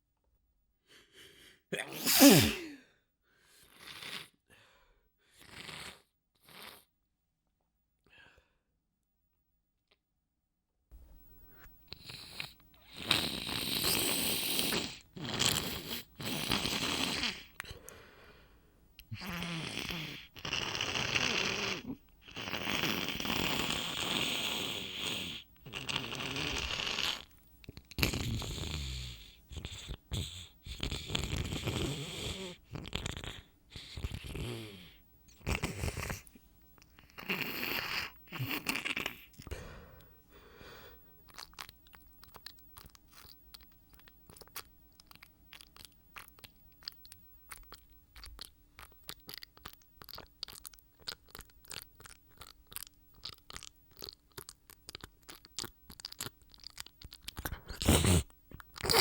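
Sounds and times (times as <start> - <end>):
person blowing nose and sniffling: 1.0 - 2.8, 3.7 - 4.4, 12.8 - 17.5, 57.6 - 59.0.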